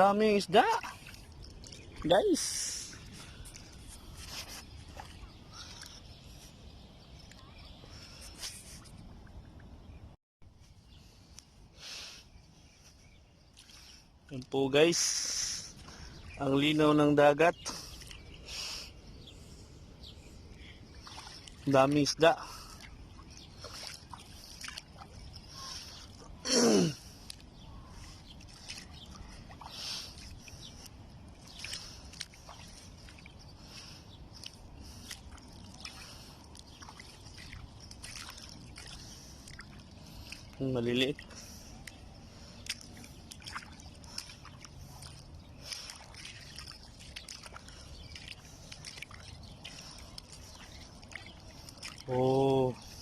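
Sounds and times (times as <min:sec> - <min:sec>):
small waves lapping: 0:00.0 - 0:10.0, 0:10.8 - 0:53.0.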